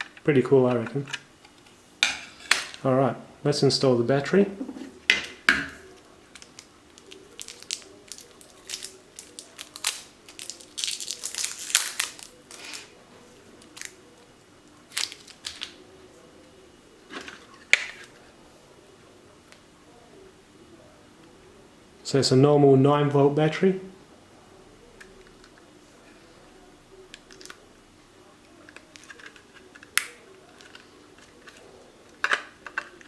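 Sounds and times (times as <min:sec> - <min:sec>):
plastic packaging crinkling and tearing: 0:05.8 - 0:12.9, 0:13.6 - 0:14.0, 0:14.8 - 0:15.8.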